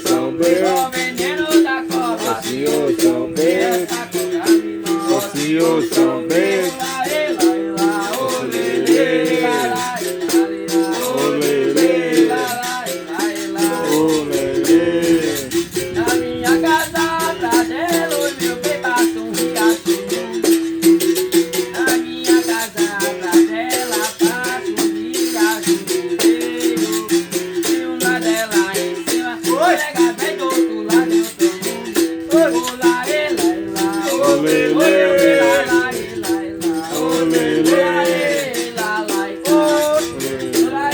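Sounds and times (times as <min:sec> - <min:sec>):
berimbau playing: 0:00.0 - 0:21.8, 0:32.0 - 0:40.9.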